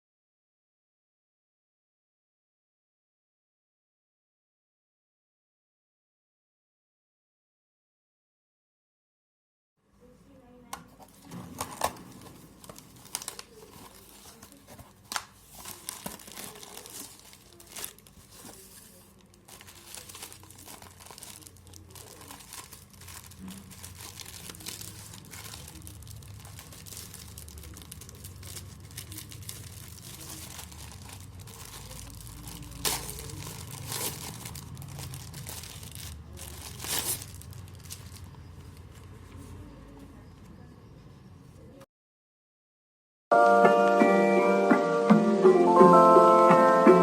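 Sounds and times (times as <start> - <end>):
packaging crinkling and tearing: 11.1 - 39.4
packaging snaps: 11.2 - 18.6.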